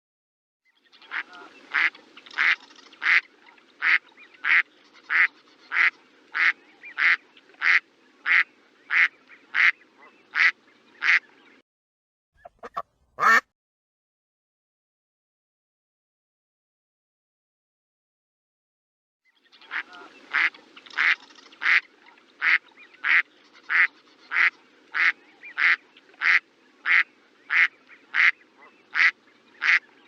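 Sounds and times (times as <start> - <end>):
duck quacking: 1.1 - 11.2, 12.4 - 13.5, 19.7 - 29.8.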